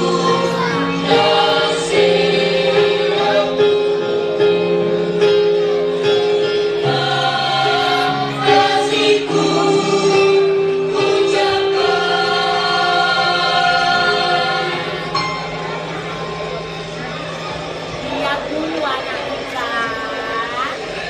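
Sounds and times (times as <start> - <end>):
choir-like singing music: 0.0 - 21.0.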